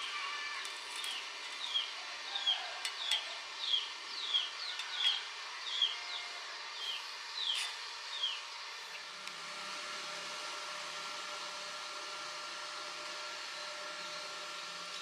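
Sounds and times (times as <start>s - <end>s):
bird chirping: 1.1s - 6.2s, 6.8s - 9.0s.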